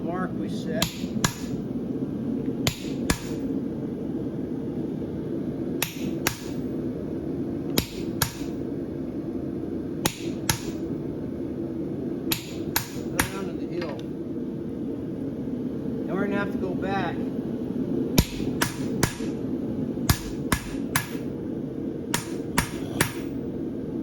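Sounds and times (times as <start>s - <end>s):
steady low drone: 0.0s - 24.0s
hammer striking metal: 0.8s - 1.6s, 2.6s - 3.5s, 5.8s - 6.6s, 7.8s - 8.6s, 10.1s - 10.8s, 12.3s - 13.4s, 18.2s - 19.4s, 20.1s - 21.3s, 22.1s - 23.4s.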